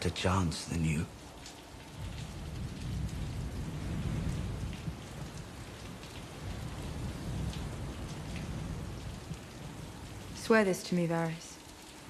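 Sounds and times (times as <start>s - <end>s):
steady rain: 0.0s - 12.0s
rolling thunder rumble: 1.8s - 10.8s.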